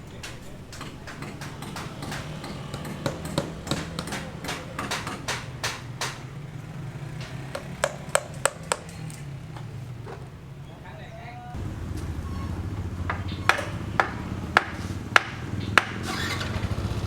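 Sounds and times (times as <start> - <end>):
sharp knocks and taps: 0.2 - 6.3, 7.2 - 9.7, 13.0 - 16.0.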